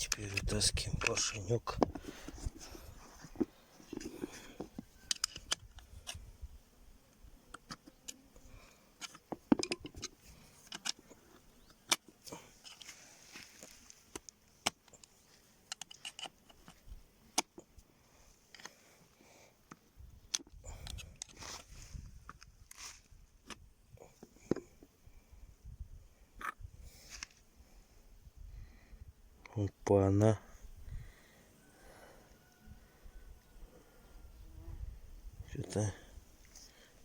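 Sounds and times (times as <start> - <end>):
metallic clicks of tools: 5.0 - 6.2, 14.2 - 16.8.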